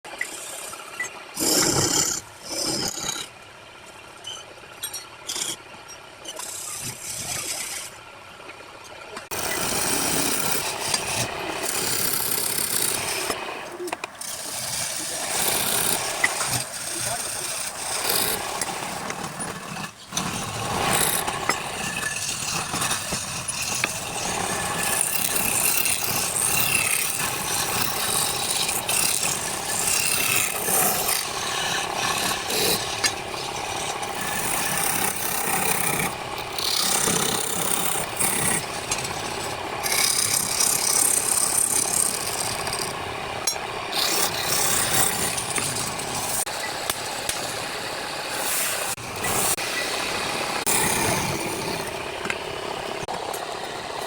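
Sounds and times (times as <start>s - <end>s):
tool rasping on wood: 9.3s - 13.5s, 14.2s - 43.0s, 43.9s - 46.5s.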